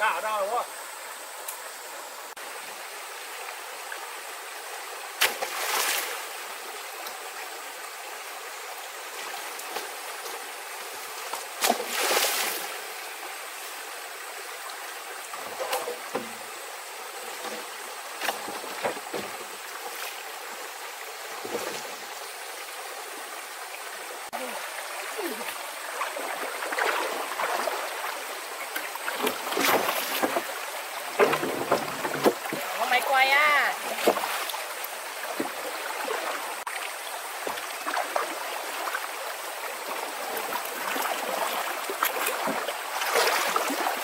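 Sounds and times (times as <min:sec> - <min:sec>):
rush of water: 0:00.0 - 0:44.0
stream running: 0:00.0 - 0:44.0.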